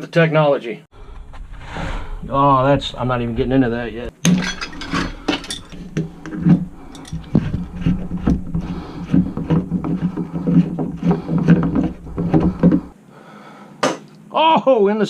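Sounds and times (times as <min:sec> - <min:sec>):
steady low hum: 0:01.0 - 0:13.2
knocks and clatters of demolition: 0:04.1 - 0:13.0.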